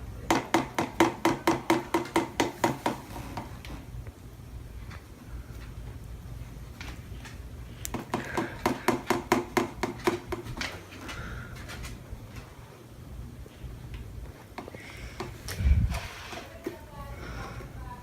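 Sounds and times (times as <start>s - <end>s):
utensil knocking against mixing bowl: 7.9s - 10.6s.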